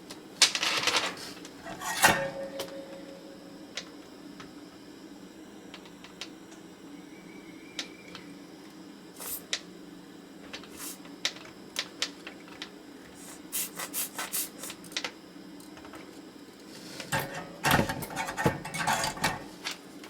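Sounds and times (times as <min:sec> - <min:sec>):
steady low hum: 0:00.0 - 0:20.0
desoldering tool clicks and scrapes: 0:01.0 - 0:03.3
short hissing puffs: 0:13.2 - 0:14.7.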